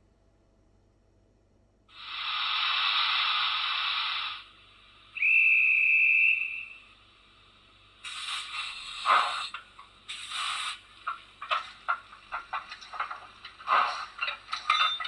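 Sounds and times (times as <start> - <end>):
steam hiss from small speaker: 1.9 - 12.7
steam whistle blast: 5.2 - 7.0.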